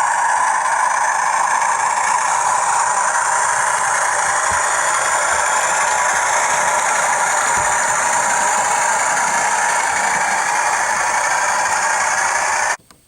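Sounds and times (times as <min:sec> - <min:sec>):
diesel engine sound from small speaker: 0:00.0 - 0:12.8.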